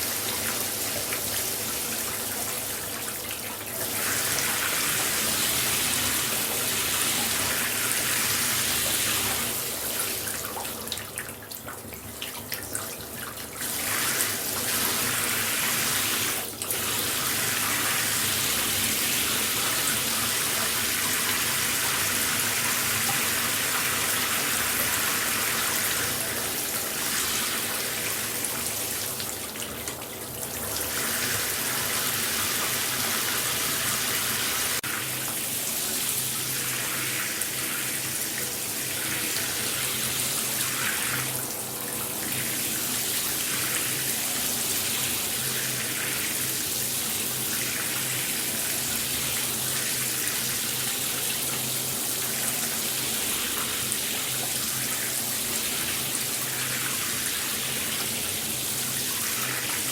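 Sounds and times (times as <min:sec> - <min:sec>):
shower water spraying: 0:13.6 - 0:29.2.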